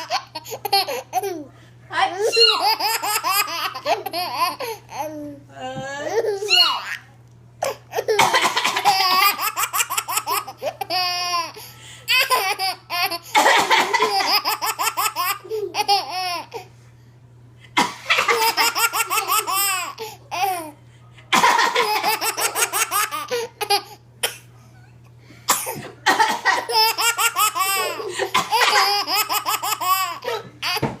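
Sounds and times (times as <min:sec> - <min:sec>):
baby laughing: 0:00.0 - 0:01.5, 0:02.2 - 0:05.4, 0:06.1 - 0:16.7, 0:18.2 - 0:20.7, 0:21.4 - 0:24.0, 0:26.5 - 0:31.0
adult coughing: 0:08.1 - 0:09.0, 0:13.3 - 0:14.4, 0:17.8 - 0:18.4, 0:21.3 - 0:21.9, 0:24.2 - 0:24.5, 0:25.5 - 0:26.8, 0:27.8 - 0:29.1.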